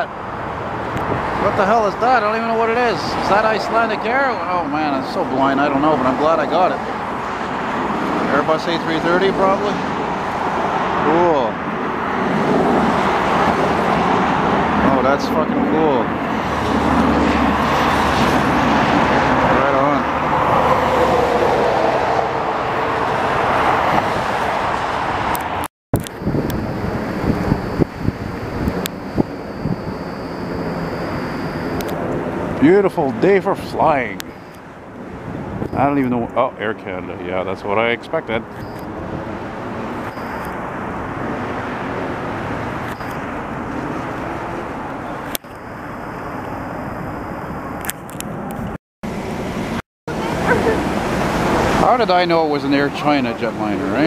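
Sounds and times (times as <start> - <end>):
jet engines roaring: 0.0 - 54.0.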